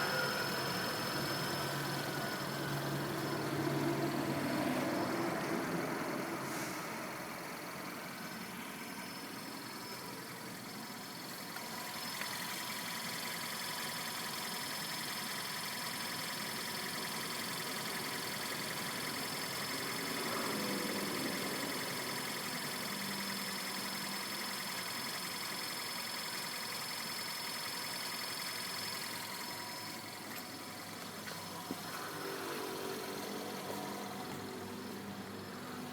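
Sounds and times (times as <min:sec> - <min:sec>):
high-pitched whine: 0:00.0 - 0:06.3
car engine idling: 0:00.0 - 0:35.9.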